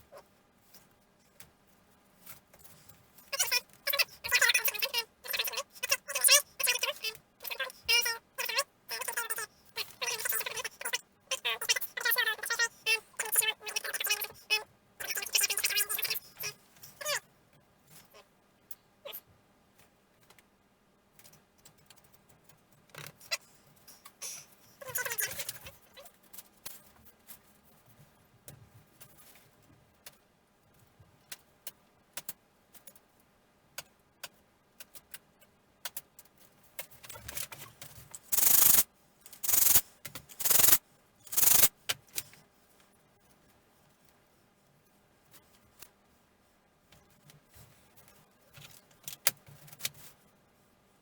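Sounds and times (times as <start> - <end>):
small parts clicking and tapping: 21.1 - 24.2, 30.8 - 42.9.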